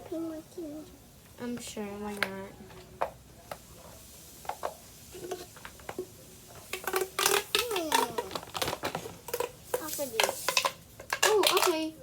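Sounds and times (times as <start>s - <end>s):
plastic toys clicking and rattling: 6.6s - 12.0s.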